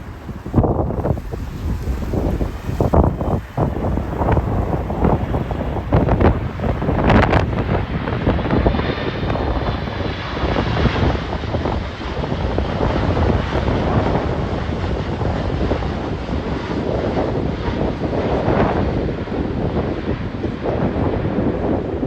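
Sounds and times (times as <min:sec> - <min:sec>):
jet engines rumbling: 0:00.0 - 0:22.0
wind buffeting microphone: 0:00.0 - 0:22.0.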